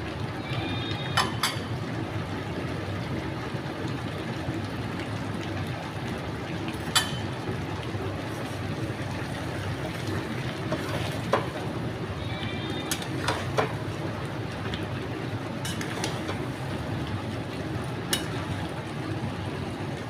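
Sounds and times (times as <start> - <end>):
food cooking in a pan: 0.0 - 20.0
metal spoon clinking against pan: 6.9 - 7.3, 15.6 - 16.2, 18.1 - 18.4.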